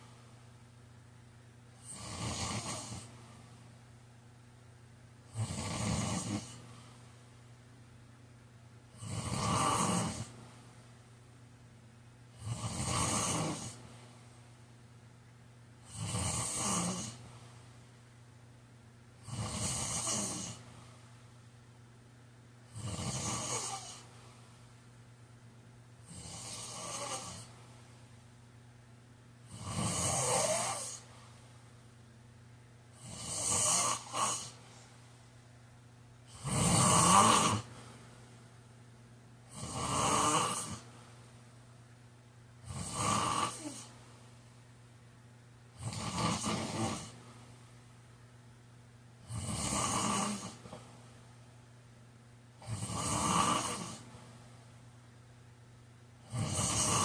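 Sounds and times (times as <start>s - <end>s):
quiet breathing: 0.0s - 0.6s, 6.2s - 7.4s, 29.5s - 31.8s, 32.9s - 35.6s, 37.1s - 38.7s
man snoring: 1.8s - 3.1s, 5.3s - 6.6s, 8.9s - 10.3s, 12.4s - 13.8s, 15.8s - 17.2s, 19.2s - 20.6s, 22.7s - 24.1s, 26.1s - 27.5s, 29.5s - 31.1s, 33.0s - 34.6s, 36.3s - 37.7s, 39.5s - 40.8s, 42.6s - 43.9s, 45.8s - 47.2s, 49.2s - 50.7s, 52.6s - 54.0s, 56.2s - 57.0s.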